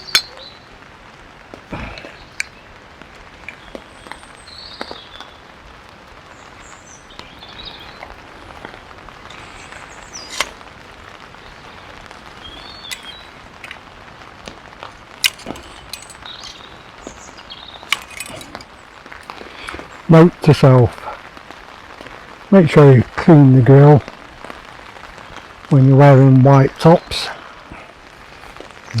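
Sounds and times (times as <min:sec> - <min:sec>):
metal clicks of grill assembly: 0:00.0 - 0:00.3, 0:10.2 - 0:10.5, 0:15.2 - 0:16.6, 0:17.9 - 0:18.6
birds chirping: 0:00.0 - 0:21.4, 0:24.9 - 0:29.0
rain hissing: 0:00.0 - 0:29.0.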